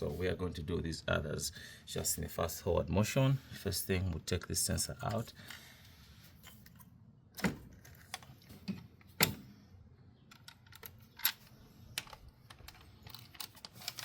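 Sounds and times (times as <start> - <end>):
plastic and metal parts clicking: 10.3 - 14.0.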